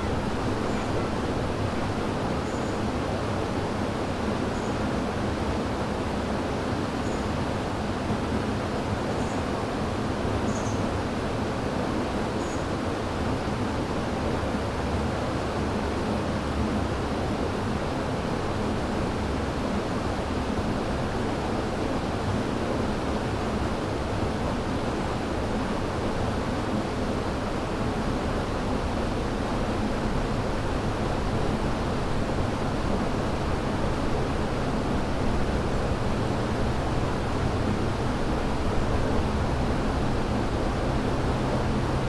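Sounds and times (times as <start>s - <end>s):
river rushing: 0.0s - 6.6s, 12.7s - 42.0s.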